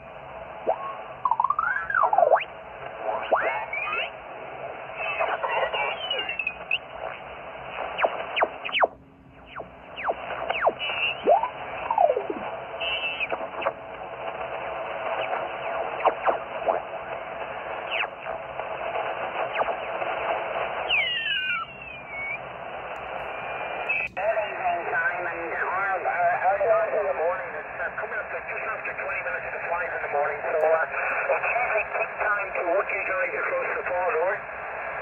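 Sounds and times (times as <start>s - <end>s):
radio static hiss: 0.0s - 35.0s
radio whistles sliding in pitch: 20.8s - 22.4s.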